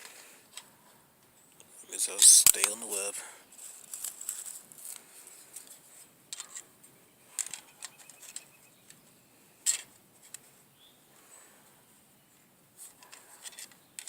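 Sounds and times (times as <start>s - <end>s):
toy figures clicking and tapping: 2.2s - 3.1s, 7.3s - 9.0s, 9.6s - 10.5s.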